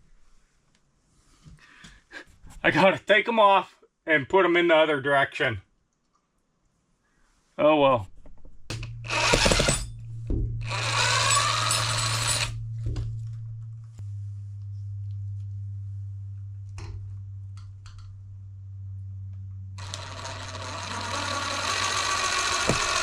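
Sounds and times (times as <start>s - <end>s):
steady low hum: 7.9s - 23.0s
power drill running: 9.0s - 9.8s, 10.6s - 12.6s, 19.8s - 23.0s.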